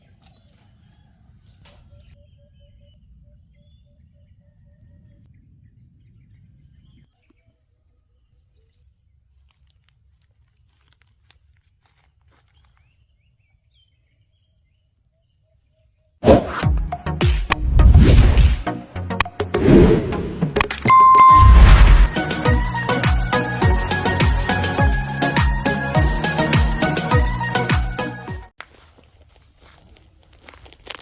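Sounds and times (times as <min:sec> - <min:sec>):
crickets chirping: 0:00.0 - 0:16.2, 0:28.7 - 0:31.0
low rumble: 0:19.7 - 0:22.1.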